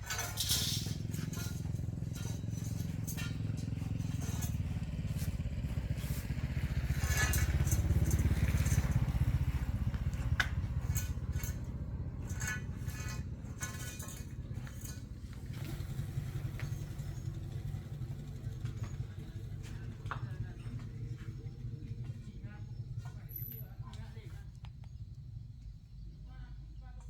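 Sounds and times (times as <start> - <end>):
clicks and clinks: 0.0 - 4.6
small engine running: 0.0 - 24.5.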